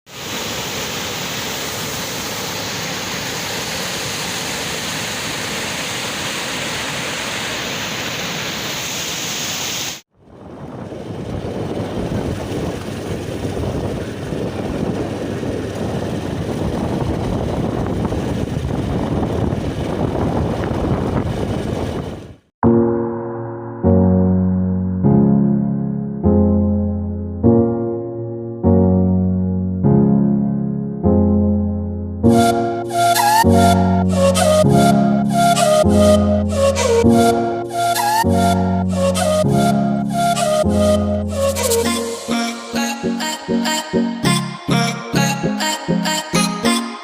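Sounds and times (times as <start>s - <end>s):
waterfall rushing: 0.1s - 10.0s, 32.9s - 37.0s.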